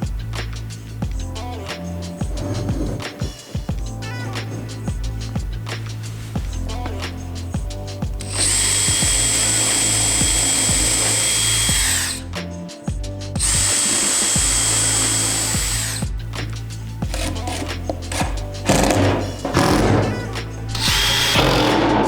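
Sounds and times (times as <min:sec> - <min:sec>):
background music with beat: 0:00.0 - 0:22.0
power tool whining: 0:08.2 - 0:12.2, 0:13.4 - 0:16.0, 0:17.1 - 0:21.9.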